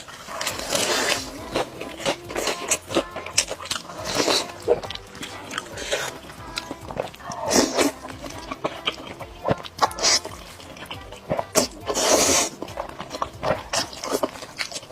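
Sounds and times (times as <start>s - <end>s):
chewing and biting: 0.0s - 14.9s
mouth clicks: 0.0s - 14.9s.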